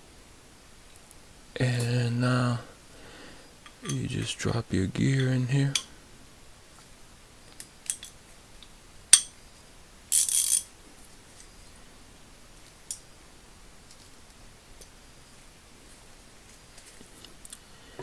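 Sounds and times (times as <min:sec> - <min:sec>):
metal ratchet parts clicking: 0:10.1 - 0:10.7.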